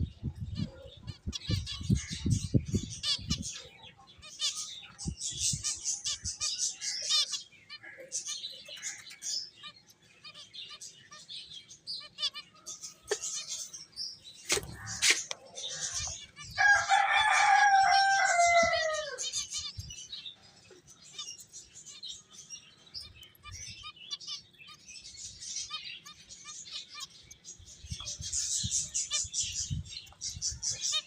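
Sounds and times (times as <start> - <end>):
rooster crowing: 16.6 - 19.3.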